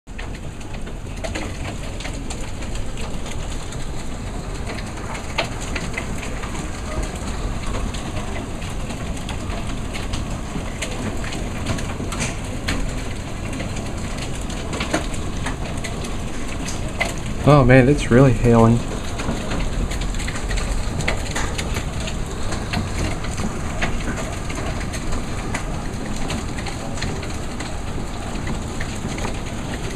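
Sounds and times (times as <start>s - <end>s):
hail striking hard surfaces: 0.1s - 29.9s.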